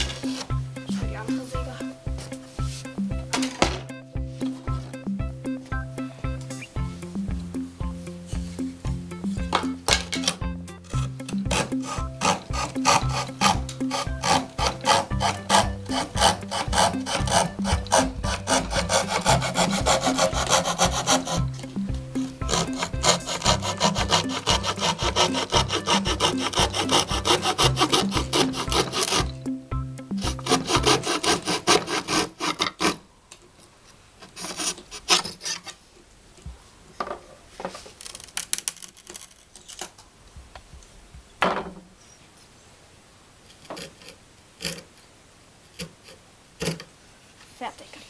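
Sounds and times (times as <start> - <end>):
hand saw cutting wood: 9.5 - 29.4, 30.1 - 33.0, 34.2 - 35.8.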